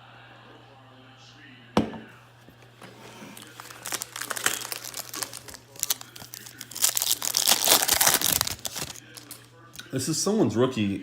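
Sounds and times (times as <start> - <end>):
foil wrapper crinkling and tearing: 3.3 - 9.5.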